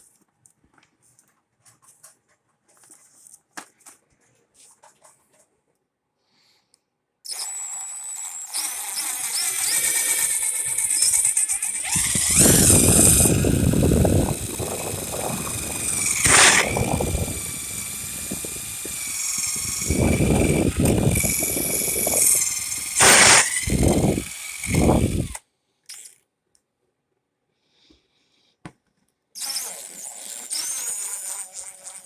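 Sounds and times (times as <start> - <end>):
power drill motor whine: 7.3 - 25.4, 29.4 - 32.0.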